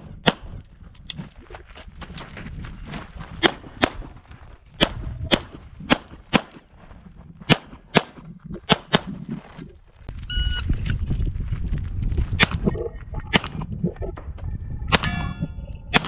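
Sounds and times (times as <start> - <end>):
pistol shots: 4.8 - 6.6.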